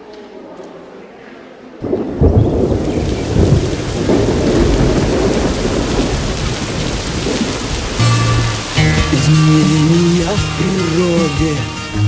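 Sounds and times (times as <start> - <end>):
thunder rumbling: 1.8 - 11.5
heavy rain: 1.8 - 12.0.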